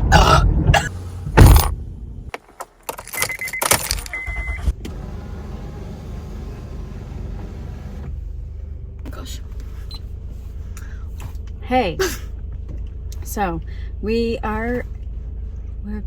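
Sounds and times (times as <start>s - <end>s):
car engine rumble: 0.0s - 16.0s
keys jangling: 2.9s - 4.2s
car warning chime beeps: 3.2s - 4.7s.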